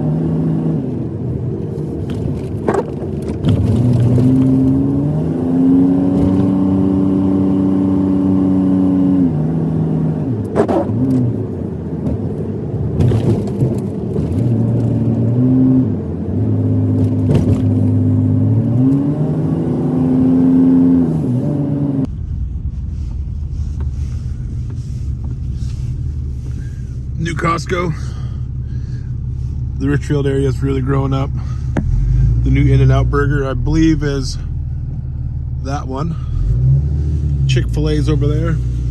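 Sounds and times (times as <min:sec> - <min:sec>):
truck engine from inside cab: 0:00.0 - 0:38.9
low rumble: 0:21.0 - 0:38.9.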